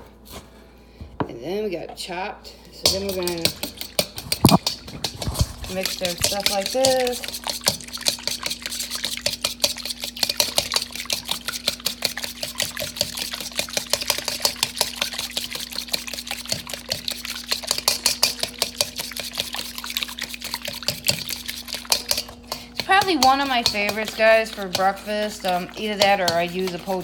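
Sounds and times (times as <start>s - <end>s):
utensil beating liquid in a bowl: 2.7s - 27.0s
utensil clicking against bowl: 20.9s - 27.0s.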